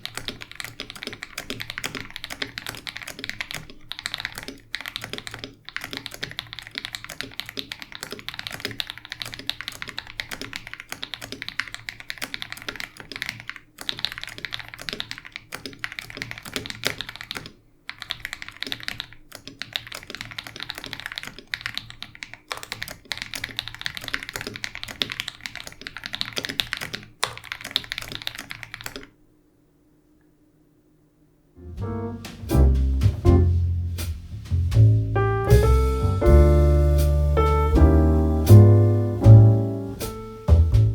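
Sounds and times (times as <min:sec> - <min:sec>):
mechanical keyboard typing: 0:00.0 - 0:29.1.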